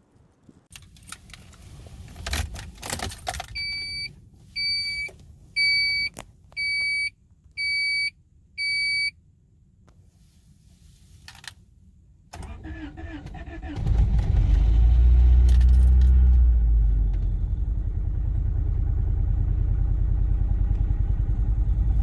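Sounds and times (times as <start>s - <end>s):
car warning chime beeping: 3.5s - 9.2s.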